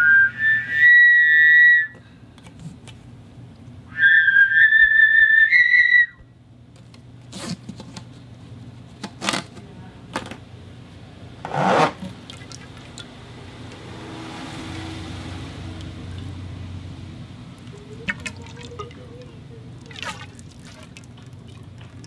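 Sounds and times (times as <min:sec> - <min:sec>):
whistle blown through conduit: 0:00.0 - 0:02.0, 0:03.9 - 0:06.3.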